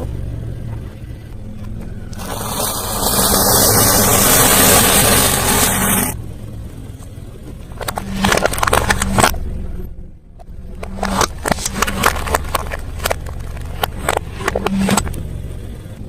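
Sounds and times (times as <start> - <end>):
vehicle low hum: 0.0 - 16.0
loud rushing noise: 2.1 - 6.2.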